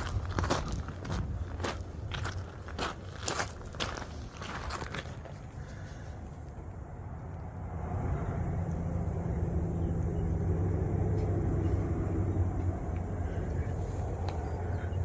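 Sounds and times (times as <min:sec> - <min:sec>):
low engine rumble: 0:00.0 - 0:15.0.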